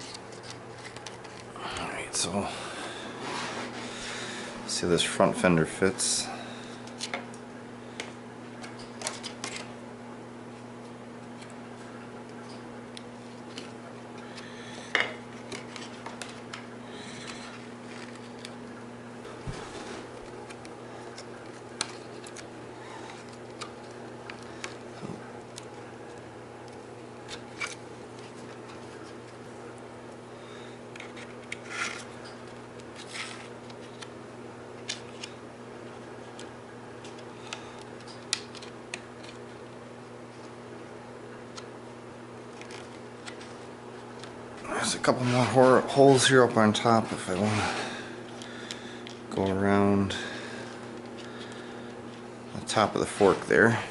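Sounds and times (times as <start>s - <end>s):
steady low hum: 0.0s - 53.9s
scraping rustles: 3.0s - 4.2s, 42.6s - 47.9s.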